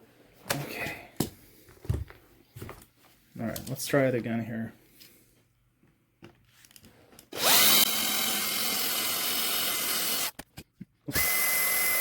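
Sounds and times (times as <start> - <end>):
small power drill drilling: 7.3 - 10.4, 11.1 - 12.0.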